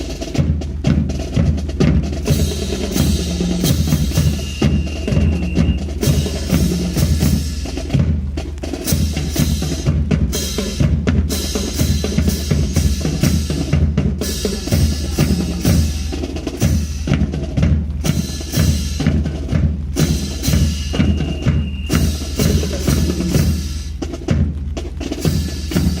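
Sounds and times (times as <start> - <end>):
marching drums: 0.0 - 26.0.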